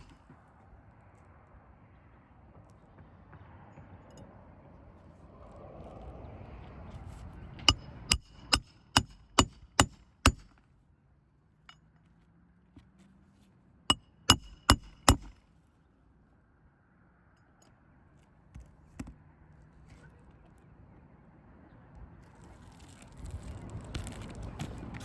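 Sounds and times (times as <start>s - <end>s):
hammer striking metal: 7.7s - 10.5s, 13.9s - 15.4s.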